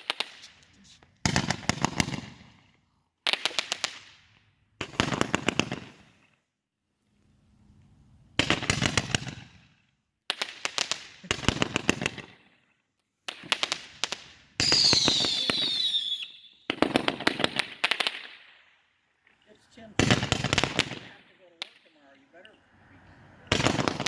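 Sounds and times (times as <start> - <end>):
firework pops and crackling: 0.0 - 6.4, 7.6 - 22.6, 23.4 - 24.0
firework whistles sliding down: 14.6 - 16.9.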